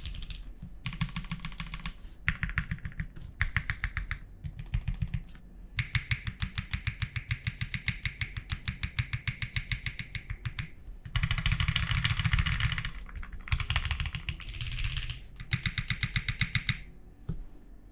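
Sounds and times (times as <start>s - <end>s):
mechanical keyboard typing: 0.0s - 5.2s, 5.8s - 16.8s.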